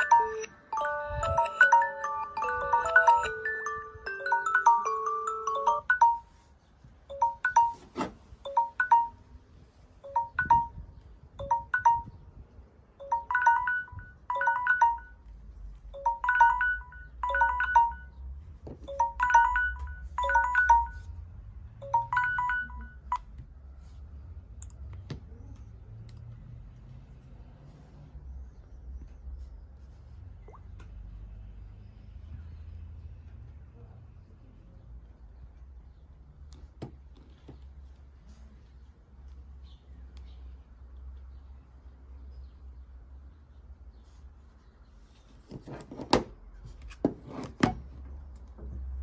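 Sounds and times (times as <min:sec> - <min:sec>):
bright pitched phone tone notes: 0:00.0 - 0:06.5, 0:07.1 - 0:09.3, 0:10.0 - 0:12.2, 0:13.0 - 0:15.2, 0:16.0 - 0:18.2, 0:18.8 - 0:21.2, 0:21.8 - 0:23.2
chime-like ringtone melody: 0:00.0 - 0:06.5, 0:07.1 - 0:12.3, 0:13.0 - 0:23.2.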